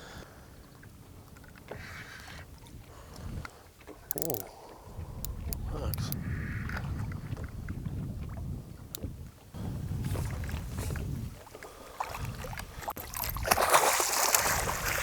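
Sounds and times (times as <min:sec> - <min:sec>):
water around boat: 0:00.0 - 0:15.0
wind rumble on microphone: 0:00.4 - 0:03.6, 0:04.8 - 0:15.0
water splashing: 0:10.1 - 0:15.0.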